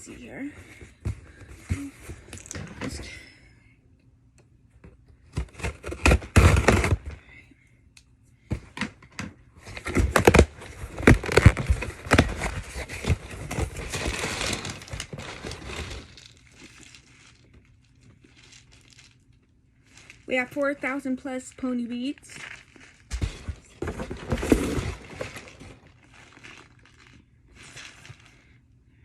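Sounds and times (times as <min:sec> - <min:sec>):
packaging crinkling and tearing: 0:09.7 - 0:20.8, 0:21.5 - 0:28.5.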